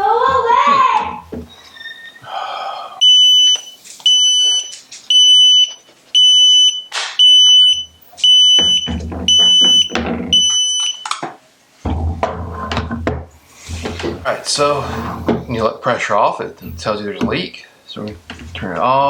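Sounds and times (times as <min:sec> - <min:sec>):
short high alarm beeps: 0:03.0 - 0:11.1
handling knocks and rubbing: 0:11.8 - 0:19.0.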